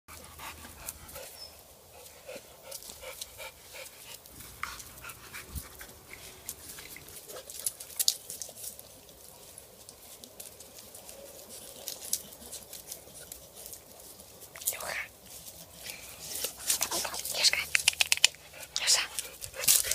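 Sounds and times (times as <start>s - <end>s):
dog making small sounds: 16.6s - 19.9s.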